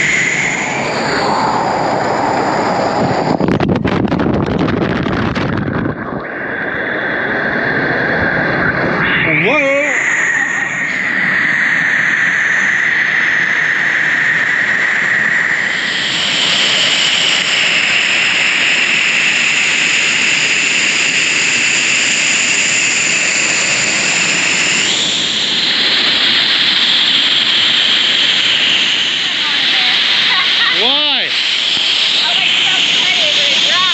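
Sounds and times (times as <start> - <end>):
waterfall roar: 29.3 - 31.3.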